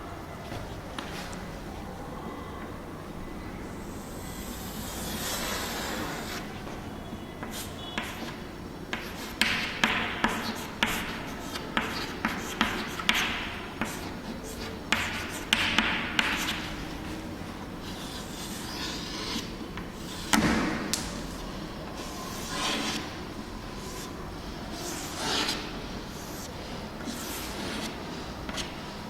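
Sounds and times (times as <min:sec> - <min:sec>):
chalk tapping and scratching: 0:04.4 - 0:06.6, 0:07.4 - 0:17.2, 0:17.8 - 0:28.9.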